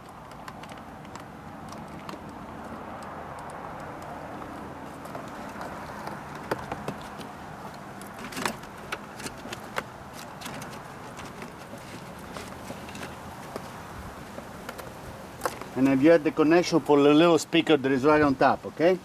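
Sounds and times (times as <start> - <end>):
steady background hiss: 11.0 - 19.0.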